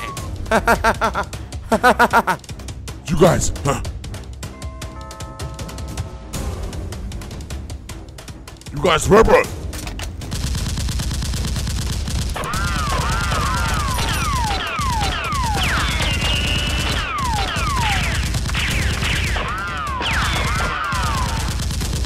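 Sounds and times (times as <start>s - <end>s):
rapid gunfire: 9.6s - 22.0s.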